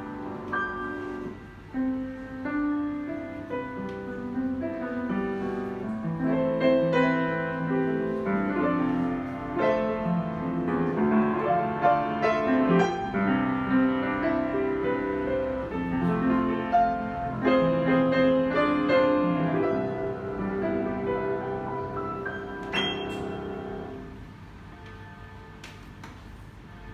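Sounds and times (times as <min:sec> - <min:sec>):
upright piano playing: 0:00.0 - 0:25.6.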